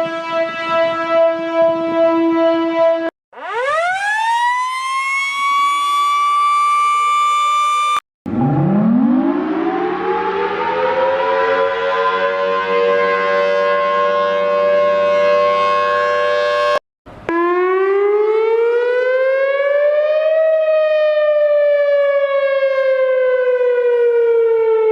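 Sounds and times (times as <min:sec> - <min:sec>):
single-tone siren rising and falling: 0:00.0 - 0:24.9
tornado siren chord: 0:00.0 - 0:24.9.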